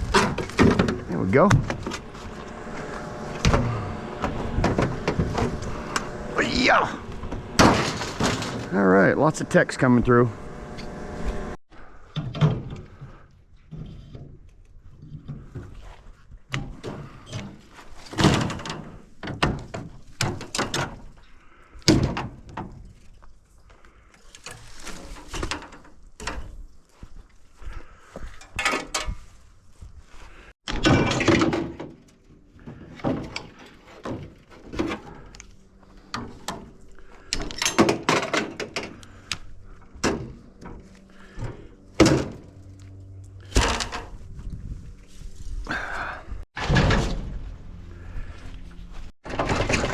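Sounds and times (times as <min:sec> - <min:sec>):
metal knocks and clanks: 0:00.0 - 0:06.2, 0:07.1 - 0:08.9, 0:36.1 - 0:39.0, 0:46.6 - 0:47.6, 0:49.2 - 0:49.9
metal parts being dropped: 0:07.6 - 0:08.8, 0:30.7 - 0:32.2.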